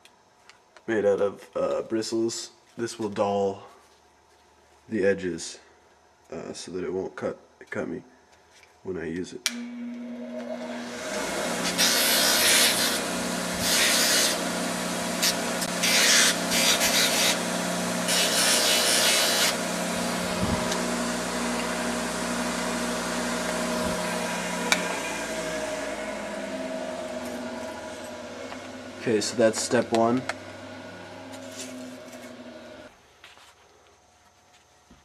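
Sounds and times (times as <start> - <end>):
wire brush wheel humming: 9.5 - 32.9.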